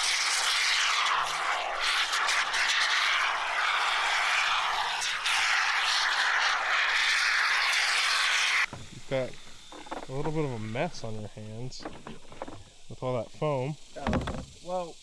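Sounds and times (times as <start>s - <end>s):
spray foam can hissing: 0.0s - 8.7s.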